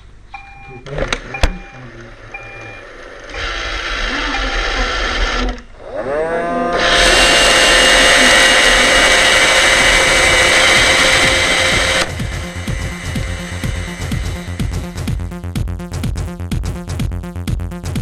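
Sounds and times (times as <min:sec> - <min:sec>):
robot vacuum motor whine: 0:02.8 - 0:15.2
electronic music with steady beat: 0:07.7 - 0:18.0.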